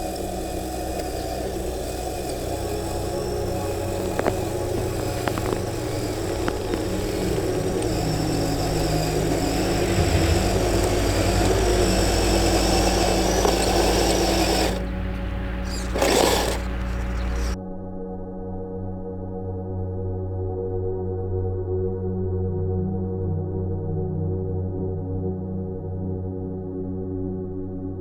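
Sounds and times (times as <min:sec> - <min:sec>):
light clicks: 0:00.0 - 0:17.6
toy electric motor whirring: 0:00.0 - 0:17.6.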